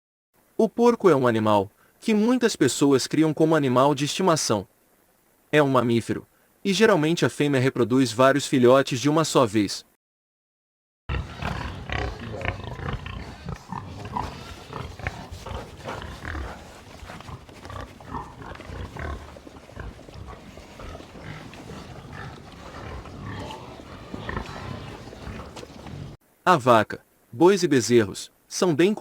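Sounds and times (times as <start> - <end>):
pigs grunting: 11.1 - 26.2.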